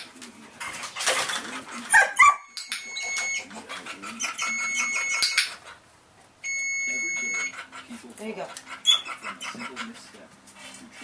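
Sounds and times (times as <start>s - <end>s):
high electronic beep: 2.4s - 3.5s, 4.4s - 5.4s, 6.4s - 7.5s.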